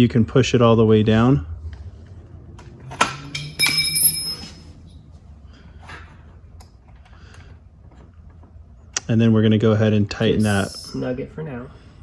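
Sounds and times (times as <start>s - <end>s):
metal-on-metal clinks: 3.3s - 5.0s.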